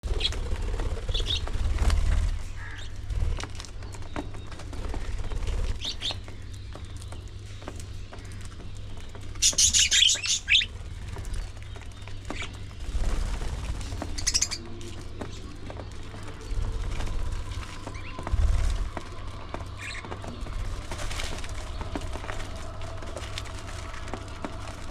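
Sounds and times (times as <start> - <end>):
wings flapping: 0.0 - 24.9
budgerigars chirping: 9.4 - 10.7
low rumble: 10.4 - 24.9.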